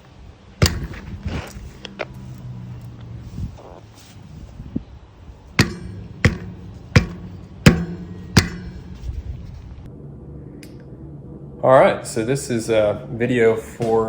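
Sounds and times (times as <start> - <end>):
suspension fork popping: 0.6 - 9.9.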